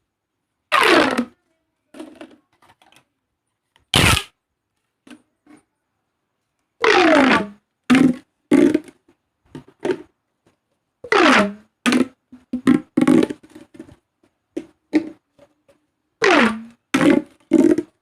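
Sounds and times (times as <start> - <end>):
plastic pop tubes popping: 0.7 - 1.4, 3.9 - 4.3, 6.8 - 10.1, 11.1 - 15.5, 16.2 - 18.0.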